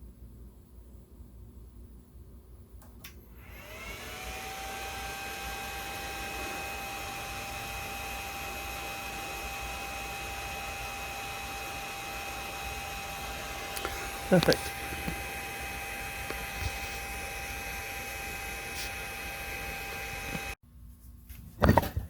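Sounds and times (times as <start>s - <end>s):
milling machine spindle whining: 3.4s - 20.6s.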